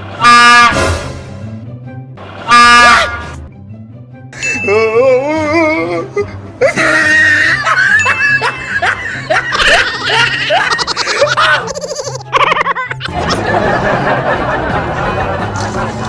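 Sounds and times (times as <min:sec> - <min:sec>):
person laughing hard: 0:06.1 - 0:16.0.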